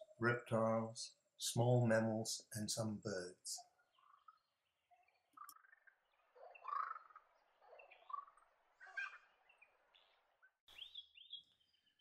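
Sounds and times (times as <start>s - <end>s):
kookaburra calling: 6.4s - 9.3s.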